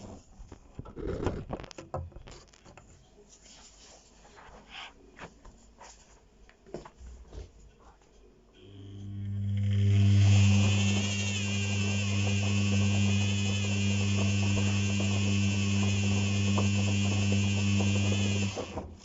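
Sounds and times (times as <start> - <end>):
appliance motor buzzing: 8.6 - 19.0.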